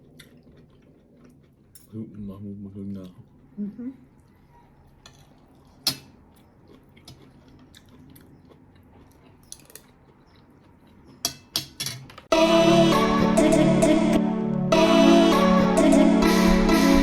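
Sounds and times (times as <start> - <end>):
cutlery clinking on dishes: 5.0 - 6.2, 11.2 - 12.3
background music: 12.3 - 17.0.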